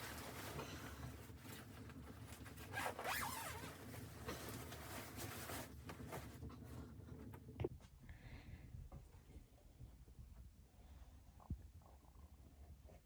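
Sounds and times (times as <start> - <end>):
zipper being pulled: 2.6 - 6.3.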